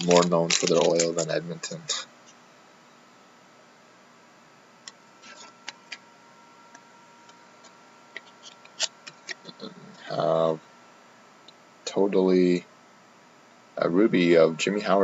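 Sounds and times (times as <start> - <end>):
trading cards clicking and tapping: 0.0 - 1.8
card packs rustling: 0.0 - 1.9.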